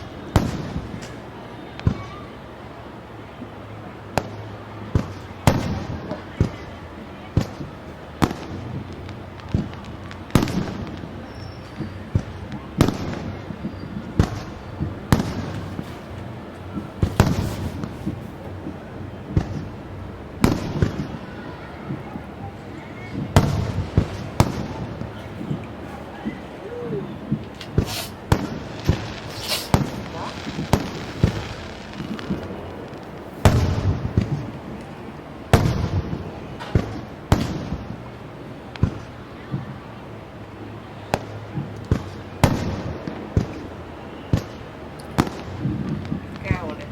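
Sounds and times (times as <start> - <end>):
fireworks crackling: 0.0 - 46.9
fireworks shells bursting: 9.8 - 21.1, 23.2 - 26.6, 27.2 - 34.7.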